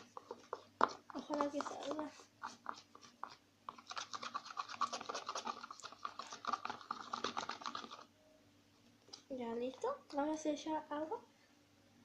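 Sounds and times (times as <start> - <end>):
glue stirred in a bowl: 0.0 - 8.1.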